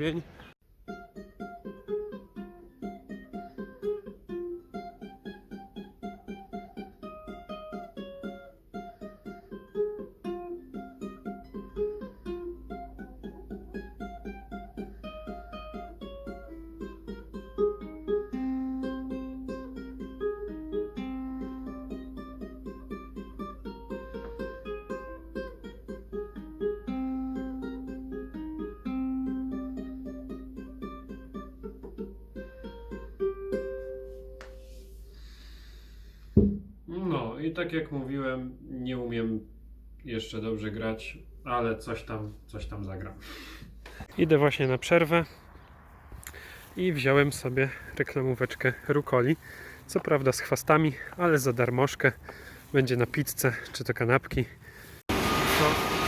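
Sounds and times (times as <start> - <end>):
ukulele fingerpicked: 0.8 - 35.0.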